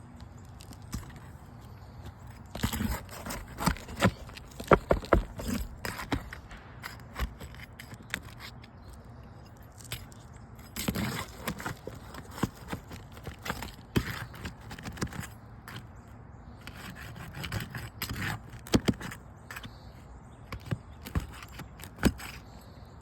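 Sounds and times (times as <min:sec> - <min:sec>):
metal tool prying nails: 0:20.5 - 0:22.4.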